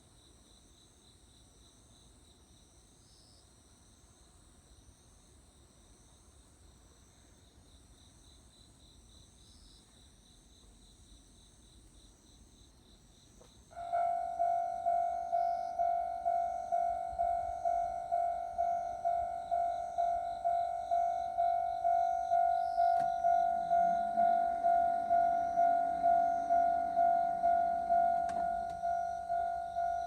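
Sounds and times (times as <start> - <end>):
crickets chirping: 0.0 - 30.0
level crossing warning bell: 13.8 - 30.0.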